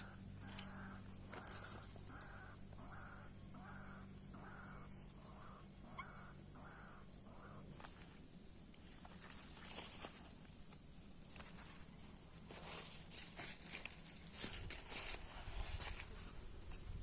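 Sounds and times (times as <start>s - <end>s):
bird harsh croaking calls: 0.0s - 8.0s
low steady hum: 0.0s - 17.0s.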